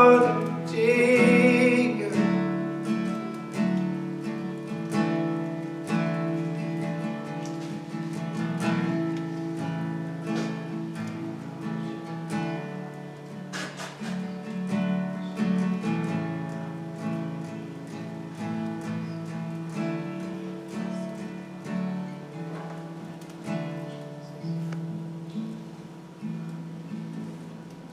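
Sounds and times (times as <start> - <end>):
guitar strumming chords: 0.0 - 27.9.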